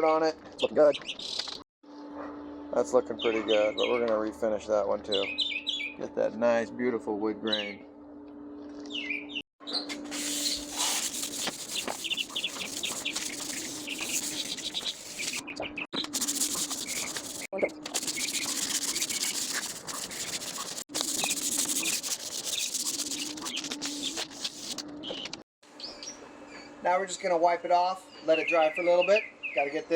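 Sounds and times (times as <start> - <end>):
sandpaper scrubbing wood: 10.0 - 15.4, 16.0 - 24.8.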